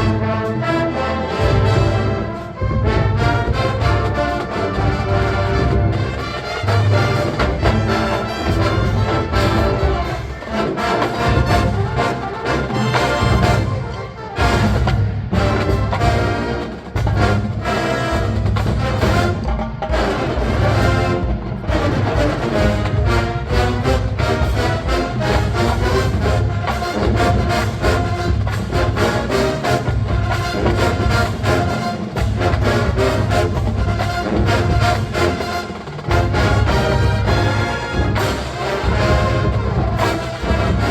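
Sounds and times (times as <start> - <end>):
brass section: 0.0 - 40.9
marching band playing funk: 0.0 - 40.9
drums beating: 1.3 - 40.9.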